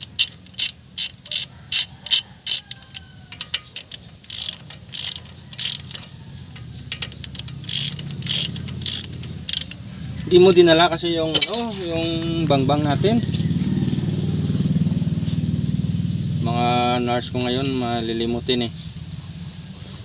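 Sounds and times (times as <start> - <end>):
ratchet wrench clicking: 0.0 - 12.2, 17.2 - 18.0.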